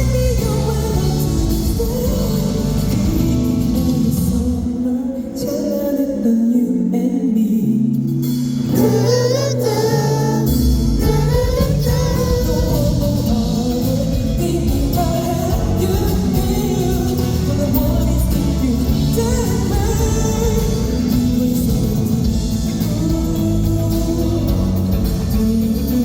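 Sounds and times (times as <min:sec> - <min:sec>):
bass and drums: 0:00.0 - 0:04.8, 0:10.4 - 0:26.0
band accompaniment: 0:00.0 - 0:04.9, 0:08.2 - 0:26.0
person singing: 0:00.0 - 0:26.0.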